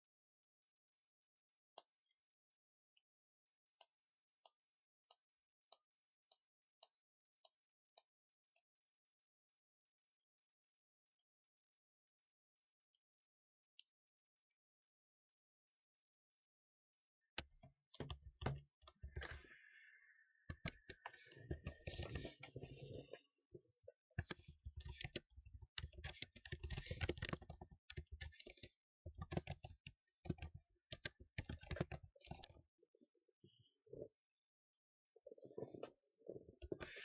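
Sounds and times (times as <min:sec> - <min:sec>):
keyboard typing clicks: 0:24.2 - 0:25.2, 0:25.8 - 0:32.6.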